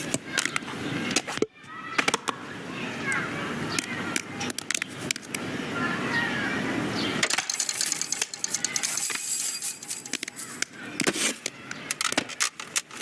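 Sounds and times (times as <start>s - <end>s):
small hard clicks and rattles: 7.2s - 10.8s.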